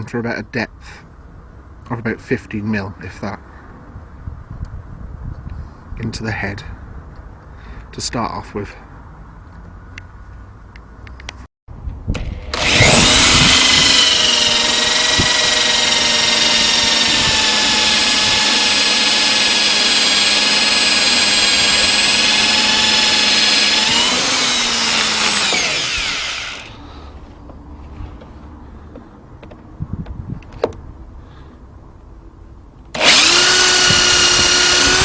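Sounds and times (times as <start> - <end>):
power drill whining: 12.2 - 26.8, 33.0 - 35.0.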